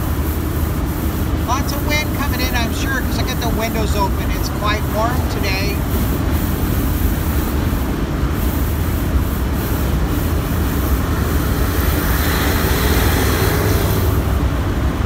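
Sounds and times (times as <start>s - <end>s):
engine and road rumble: 0.0s - 15.0s
wind rushing through windows: 0.0s - 15.0s.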